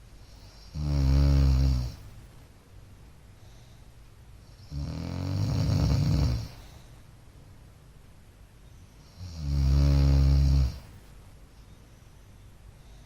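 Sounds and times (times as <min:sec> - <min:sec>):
man snoring: 0:00.5 - 0:02.0, 0:04.6 - 0:06.6, 0:09.1 - 0:10.9.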